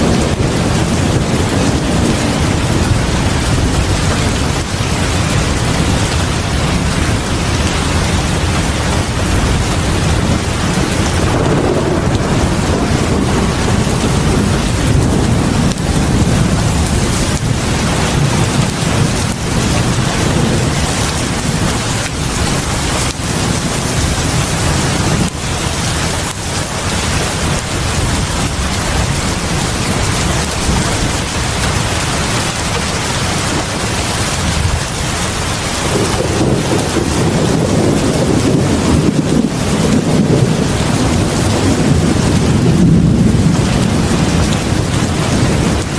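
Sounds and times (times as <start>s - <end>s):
heavy rain hissing: 0.0s - 45.9s
low rumble: 0.0s - 45.9s.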